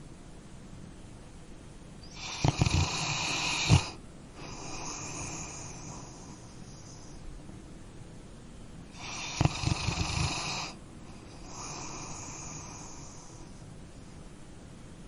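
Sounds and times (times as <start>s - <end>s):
dog snoring: 2.0s - 7.2s, 8.9s - 13.6s
quiet long breath: 3.6s - 7.4s, 10.2s - 13.7s.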